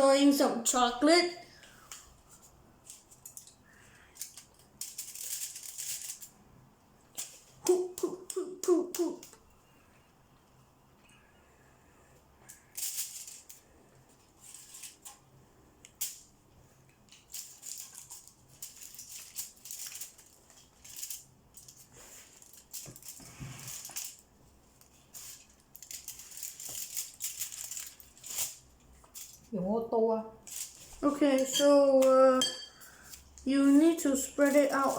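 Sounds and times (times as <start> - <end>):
rustles and rattles on baking pan: 17.2 - 24.3, 24.9 - 29.5, 33.5 - 34.9.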